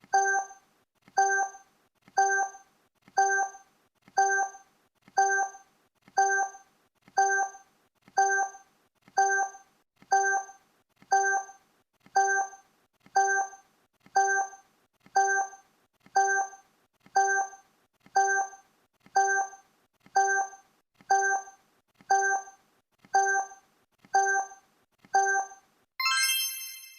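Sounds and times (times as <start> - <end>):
countdown timer blips: 0.1 - 0.6, 1.2 - 1.6, 2.2 - 2.6, 3.2 - 3.6, 4.2 - 4.6, 5.2 - 5.6, 6.2 - 6.6, 7.2 - 7.6, 8.2 - 8.6, 9.2 - 10.5, 11.1 - 11.5, 12.2 - 12.6, 13.2 - 13.6, 14.2 - 14.6, 15.2 - 15.6, 16.2 - 16.6, 17.2 - 17.6, 18.2 - 18.6, 19.2 - 19.6, 20.2 - 21.5, 22.1 - 22.5, 23.2 - 23.6, 24.2 - 24.6, 25.2 - 26.9.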